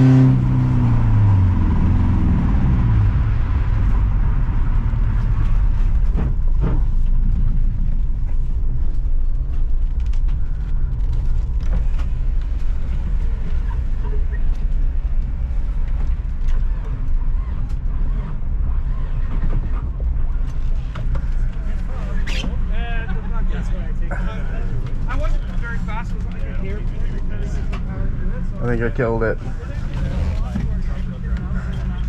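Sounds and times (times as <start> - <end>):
car engine slowing from high revs: 0.0 - 6.2
engine knocks and rattles: 0.0 - 32.0.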